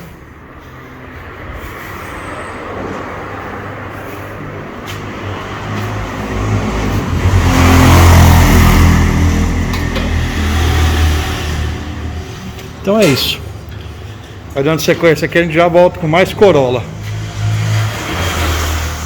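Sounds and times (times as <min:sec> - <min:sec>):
vehicle engine running: 0:00.0 - 0:12.8.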